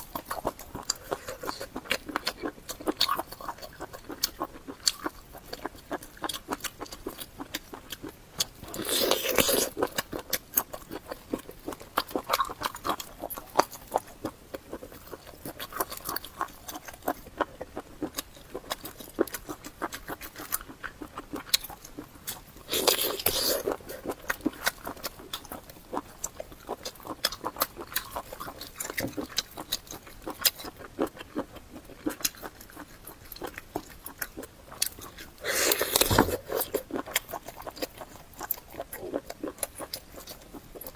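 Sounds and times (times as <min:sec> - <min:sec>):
wet chewing mouth sounds: 0:00.0 - 0:40.9
breathy slurping: 0:35.4 - 0:36.8.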